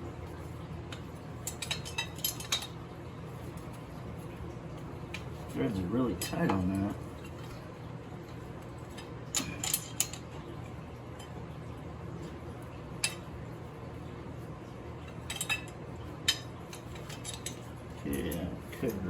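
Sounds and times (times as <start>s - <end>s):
low steady hum: 0.0s - 19.0s
metal tools clinking on metal: 1.4s - 2.8s, 9.3s - 10.3s, 15.1s - 19.0s.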